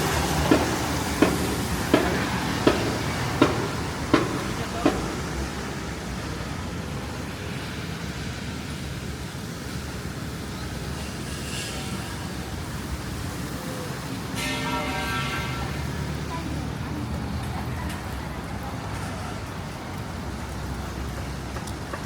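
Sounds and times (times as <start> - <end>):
sharp train clacks: 0.0 - 6.6
passing train rumble: 0.0 - 22.0.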